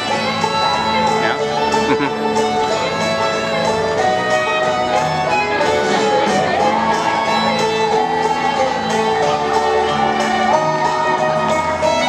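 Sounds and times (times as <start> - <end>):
country string music: 0.0 - 12.0.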